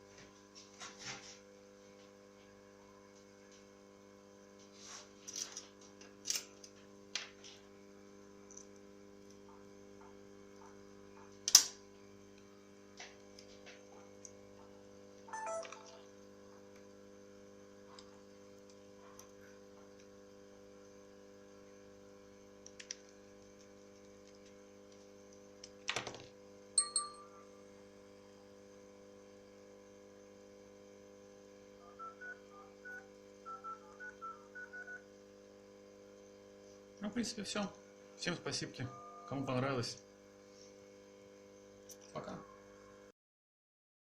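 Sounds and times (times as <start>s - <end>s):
phone key tones: 15.3s - 16.0s
short beep: 15.3s - 16.0s.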